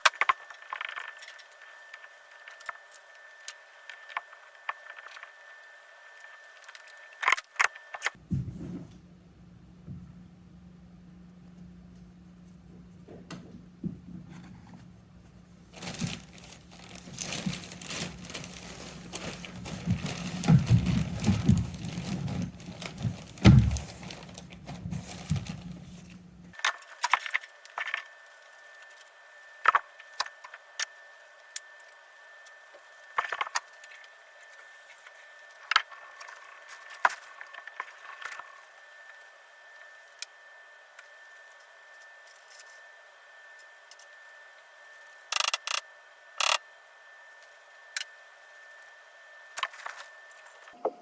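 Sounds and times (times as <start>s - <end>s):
clay rustling and scraping: 14.1s - 26.2s.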